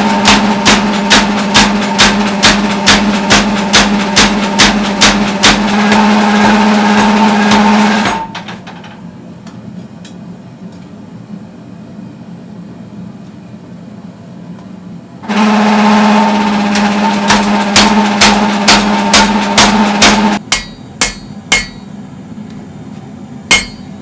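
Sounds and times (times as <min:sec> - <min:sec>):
hammer blows on metal: 0:00.0 - 0:08.4, 0:15.3 - 0:21.9, 0:23.5 - 0:24.0
machine humming: 0:00.0 - 0:08.5, 0:15.2 - 0:24.0.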